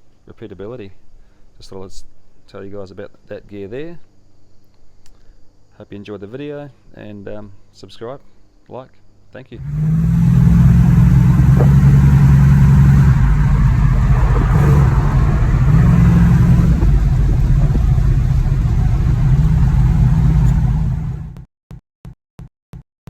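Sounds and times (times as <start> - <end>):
car engine revving: 9.6 - 21.4.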